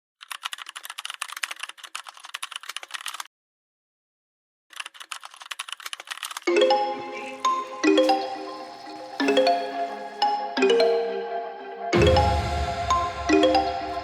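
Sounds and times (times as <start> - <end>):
computer keyboard typing: 0.2 - 3.3, 4.7 - 6.5
music with bell-like mallet notes: 6.5 - 14.0.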